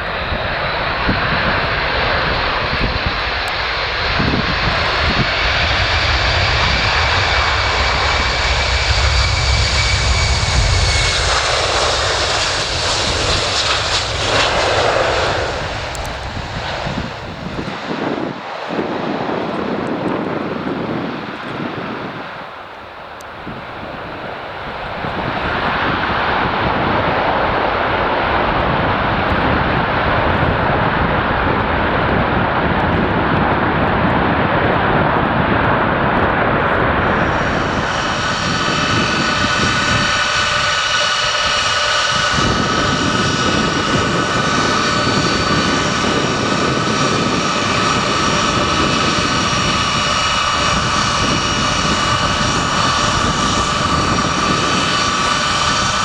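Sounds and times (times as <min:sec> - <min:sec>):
jet engines roaring: 0:00.0 - 0:56.0.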